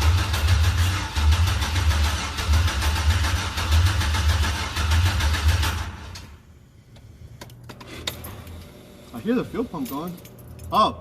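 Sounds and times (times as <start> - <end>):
starter cranking truck engine: 0.0 - 6.3.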